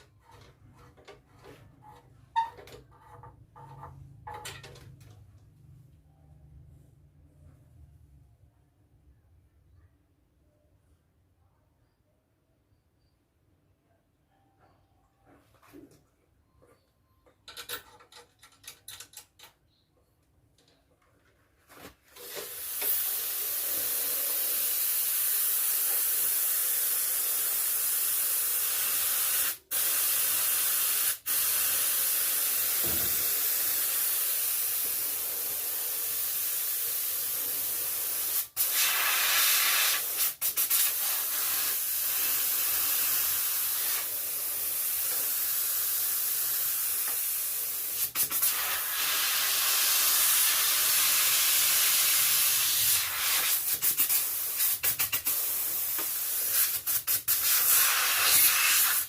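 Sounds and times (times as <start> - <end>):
gas hissing from nozzle: 22.2 - 59.0.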